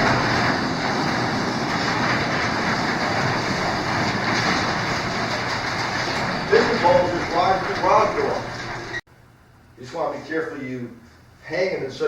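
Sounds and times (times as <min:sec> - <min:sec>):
garage door closing: 0:00.0 - 0:09.0.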